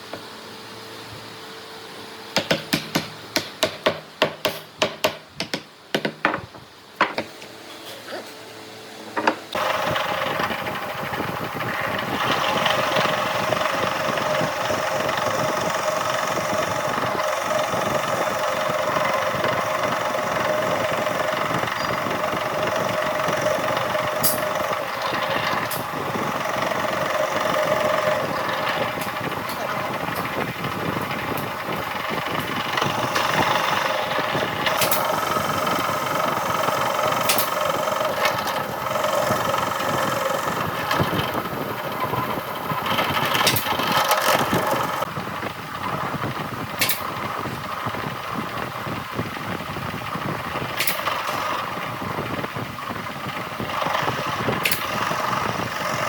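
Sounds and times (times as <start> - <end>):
sharp knocks on wood: 2.4 - 6.4
woodworking power tool running: 9.2 - 56.0.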